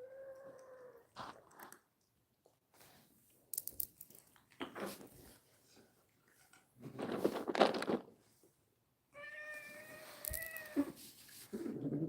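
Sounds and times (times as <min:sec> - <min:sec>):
rustling: 0:03.6 - 0:08.4
cat meowing: 0:09.2 - 0:11.0.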